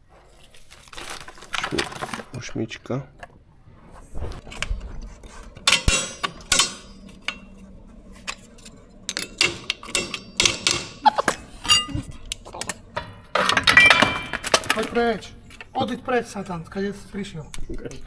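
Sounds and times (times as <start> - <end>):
metal tools clinking: 4.4 - 15.7.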